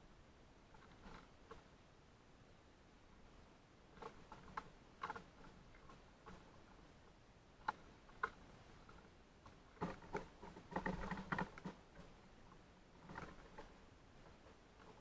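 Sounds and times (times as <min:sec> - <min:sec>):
tapping and scratching: 0:07.6 - 0:12.2.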